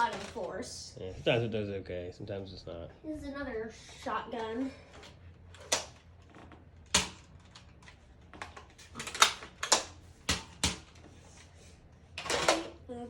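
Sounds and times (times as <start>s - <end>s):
plastic toy blasters clicking: 8.4s - 10.9s.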